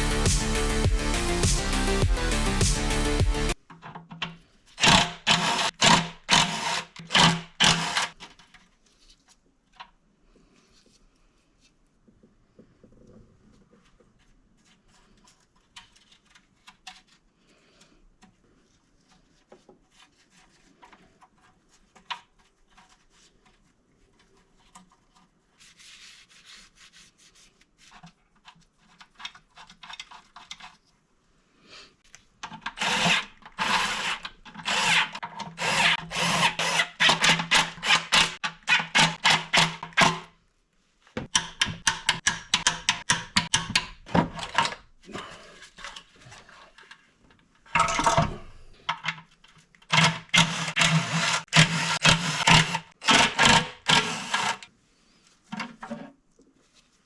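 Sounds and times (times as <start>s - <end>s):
rapid rasping ratchet strokes: 4.8s - 8.2s, 32.8s - 39.8s, 49.9s - 54.6s.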